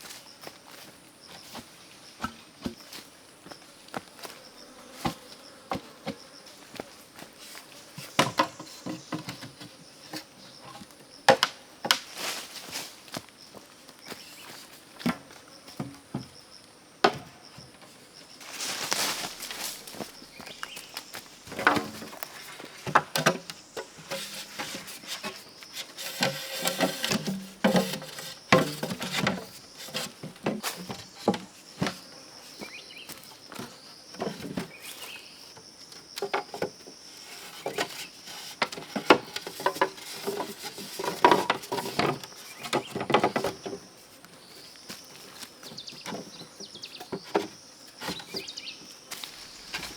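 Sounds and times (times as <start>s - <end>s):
faint high insect drone: 0.0s - 49.9s
rustling: 18.4s - 32.0s.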